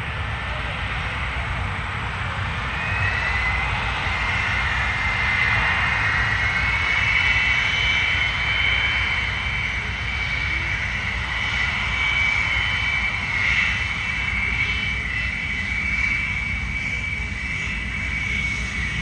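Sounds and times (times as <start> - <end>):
aircraft engine running: 0.0 - 19.0.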